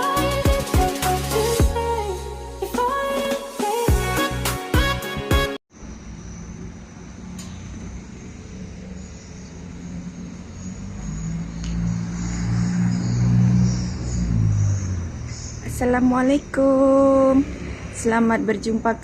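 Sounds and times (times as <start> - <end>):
road traffic rumble: 5.7 - 19.0
vehicle engine hum: 5.7 - 19.0.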